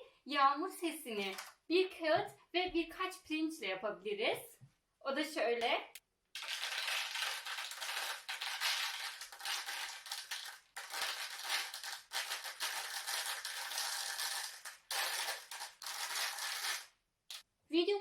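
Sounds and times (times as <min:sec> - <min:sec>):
rice pattering on paper: 0:06.4 - 0:17.4.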